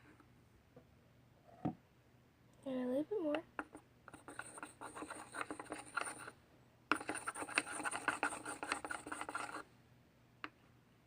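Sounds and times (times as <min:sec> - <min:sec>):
pencil scraping slime in bowl: 0:03.7 - 0:06.3, 0:06.9 - 0:09.6.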